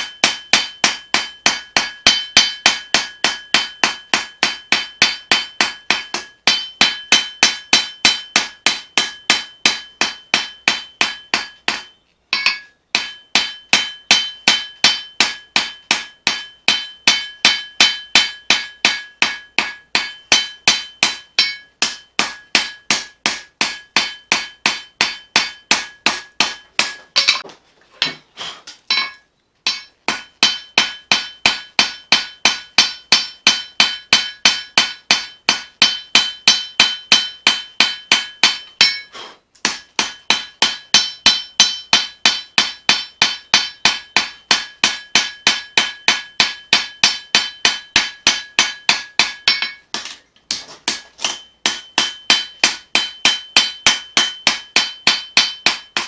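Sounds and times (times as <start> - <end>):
hammer blows on anvil: 0.0 - 28.3, 28.9 - 56.0.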